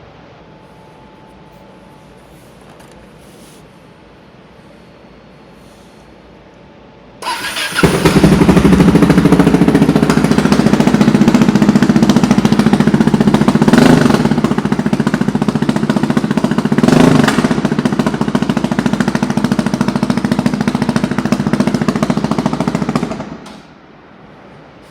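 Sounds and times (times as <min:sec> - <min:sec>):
motorcycle engine running: 0:07.2 - 0:23.4.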